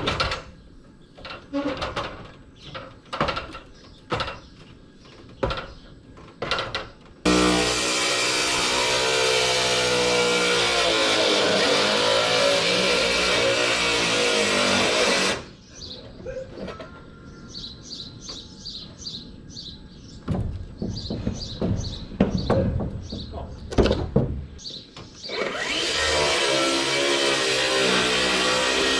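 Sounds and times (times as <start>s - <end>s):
birds chirping: 0.2s - 7.2s, 15.2s - 25.7s
knocks: 20.2s - 25.1s.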